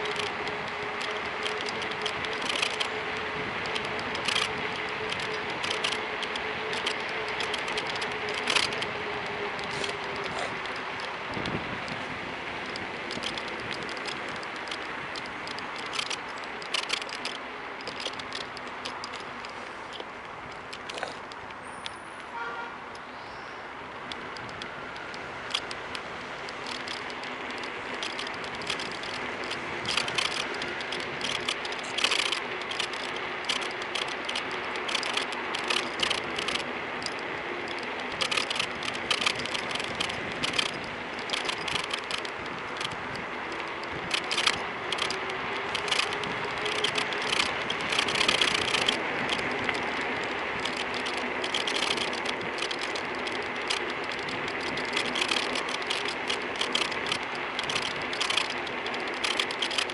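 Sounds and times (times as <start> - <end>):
scooter riding noise: 0.0 - 59.9
phone holder squeaking and clicking: 12.7 - 20.1, 24.1 - 49.9.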